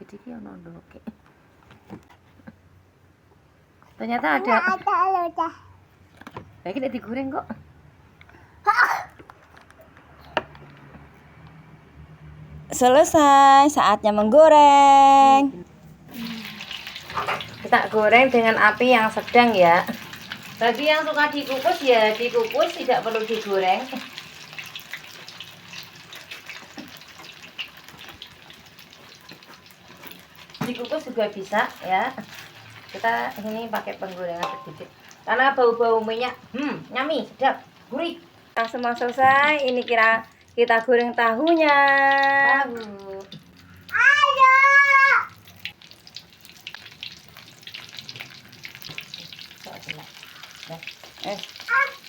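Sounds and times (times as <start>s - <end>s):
food frying in hot oil: 16.1s - 52.0s.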